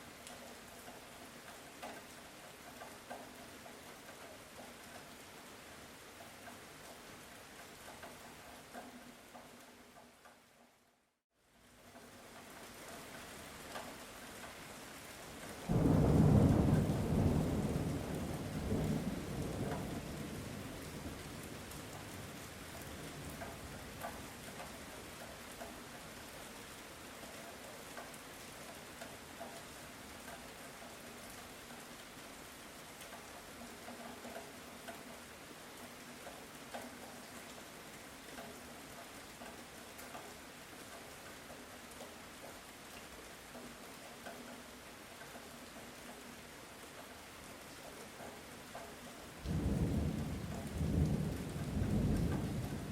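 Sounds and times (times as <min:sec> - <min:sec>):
light rain falling: 0:00.0 - 0:52.9
thunder rumble: 0:49.4 - 0:52.9.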